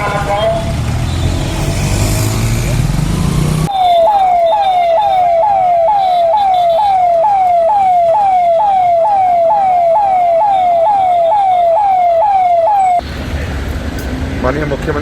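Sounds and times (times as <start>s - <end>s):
electronic siren wailing: 3.6s - 13.0s.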